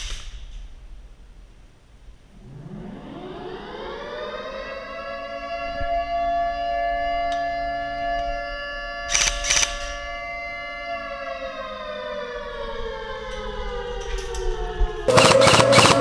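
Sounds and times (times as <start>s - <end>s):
siren winding down: 2.3s - 16.0s
sharp cracks: 15.1s - 16.0s.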